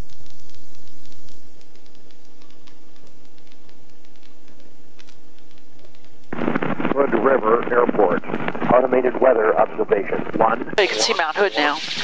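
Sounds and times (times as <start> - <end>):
low helicopter drone: 0.0 - 11.8
crackling radio static: 0.0 - 12.0
steady hum with held tones: 0.0 - 12.0.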